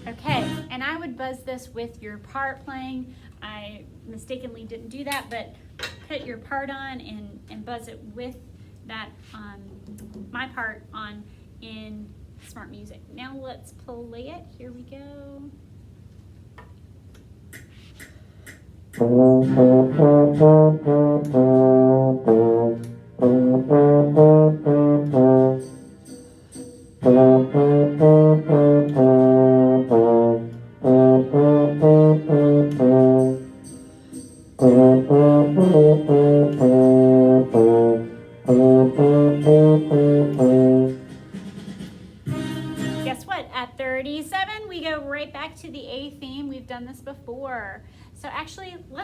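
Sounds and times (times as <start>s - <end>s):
trombone playing blues: 0.0s - 0.8s, 19.0s - 26.1s, 27.0s - 33.8s, 34.6s - 41.5s, 42.2s - 43.4s.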